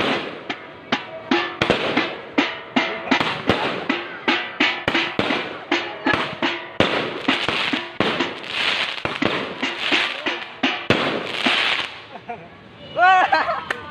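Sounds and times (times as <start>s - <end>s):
fireworks bangs: 0.0s - 0.7s, 1.4s - 2.4s, 3.1s - 4.2s, 4.8s - 12.1s
fireworks crackling: 0.0s - 1.0s, 3.1s - 12.2s.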